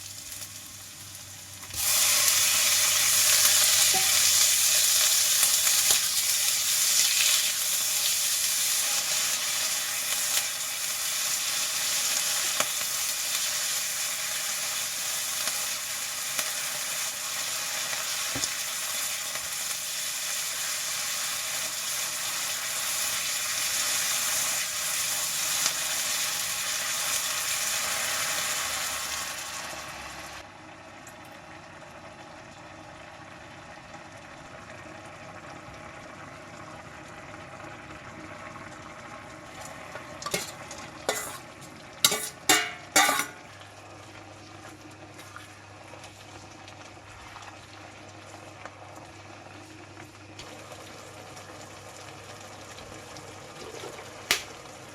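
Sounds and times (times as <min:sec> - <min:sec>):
food sizzling in hot oil: 0:00.0 - 0:30.4, 0:39.5 - 0:48.6
cookware clattering: 0:03.9 - 0:04.2, 0:40.2 - 0:41.5, 0:42.1 - 0:43.5.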